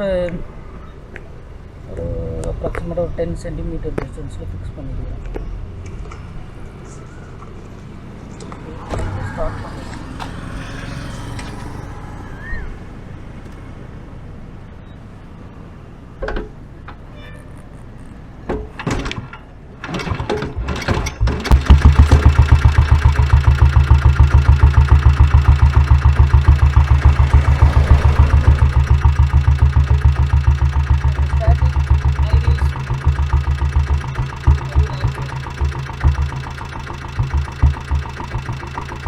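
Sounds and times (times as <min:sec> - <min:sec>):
diesel motorcycle engine starting: 0:00.8 - 0:13.6, 0:18.8 - 0:39.0
engine idling: 0:19.9 - 0:39.0.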